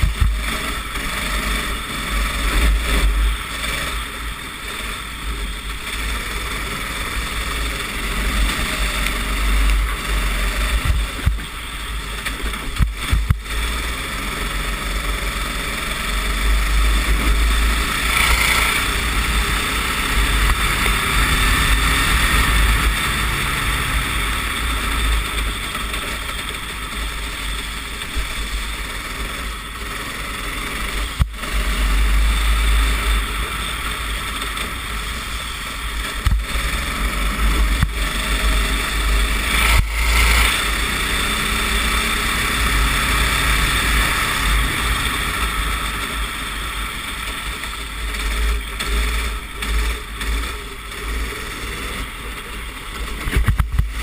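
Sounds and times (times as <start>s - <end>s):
wind rumble on microphone: 0.0s - 4.0s, 5.1s - 13.5s, 53.0s - 54.0s
racing kart engine: 0.0s - 54.0s.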